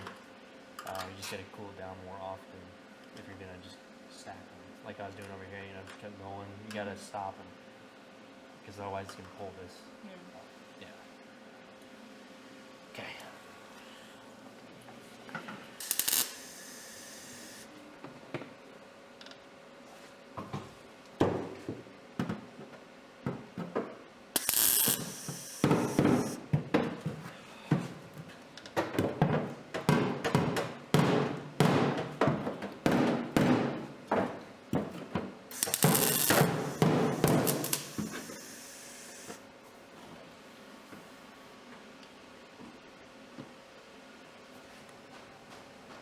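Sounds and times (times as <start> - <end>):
welder crackling bursts: 15.8 - 17.7, 24.4 - 26.5, 35.5 - 39.4.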